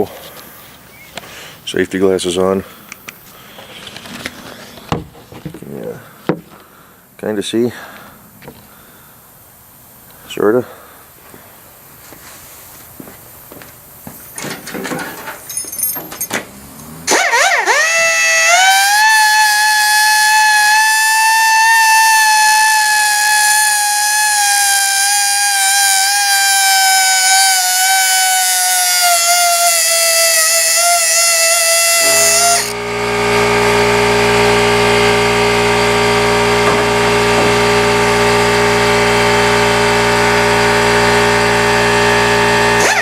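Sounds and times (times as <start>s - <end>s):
air die grinder whining: 16.5s - 43.0s
low hum: 31.9s - 42.9s.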